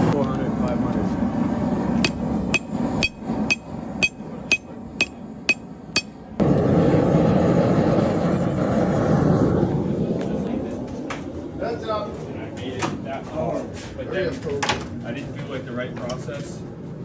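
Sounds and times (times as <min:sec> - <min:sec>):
loud steady rushing noise: 0:00.0 - 0:17.0
hammer striking metal on anvil: 0:02.0 - 0:06.4.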